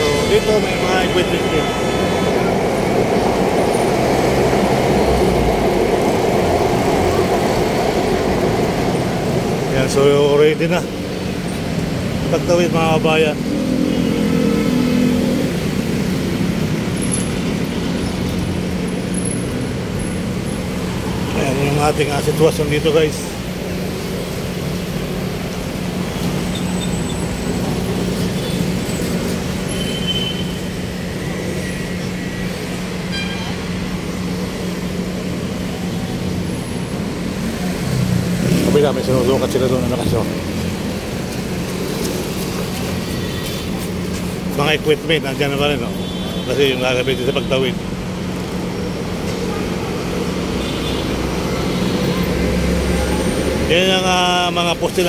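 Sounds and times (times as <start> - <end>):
train rumbling past: 0.0 - 29.8
road and vehicle noise: 0.0 - 55.0.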